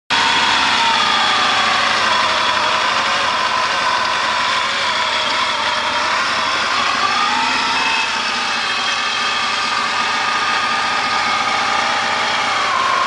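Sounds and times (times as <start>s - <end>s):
engine running steadily: 0.1s - 13.0s.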